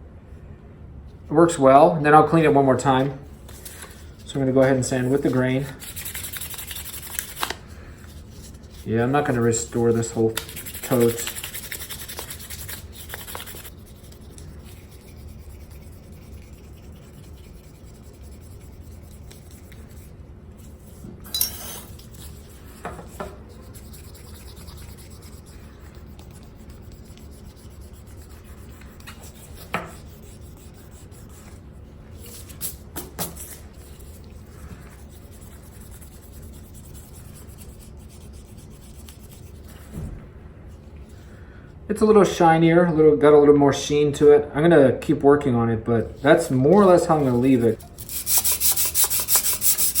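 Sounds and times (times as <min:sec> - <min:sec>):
sandpaper rubbing: 0:03.9 - 0:20.1, 0:23.5 - 0:31.6, 0:34.9 - 0:39.7, 0:46.2 - 0:50.0.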